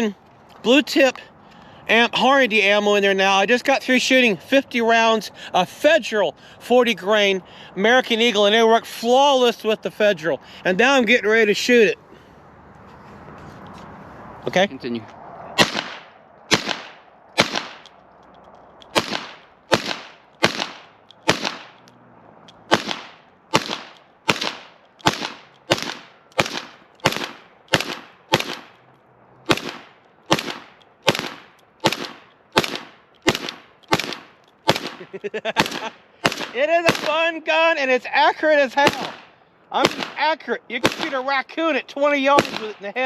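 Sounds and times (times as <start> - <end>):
suppressed pistol shots: 15.6 - 17.9, 18.8 - 28.8, 29.5 - 37.2, 38.8 - 40.2, 40.8 - 41.2, 42.4 - 42.8.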